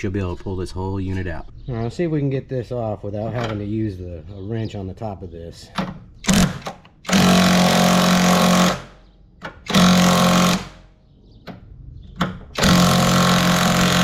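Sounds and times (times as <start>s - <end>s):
impact wrench hammering: 6.3s - 10.8s, 12.6s - 14.0s.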